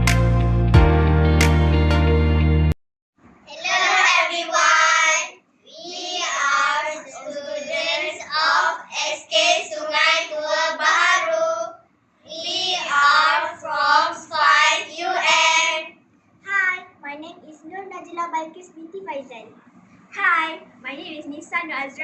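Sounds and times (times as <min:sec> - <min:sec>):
children singing: 0:12.3 - 0:15.8.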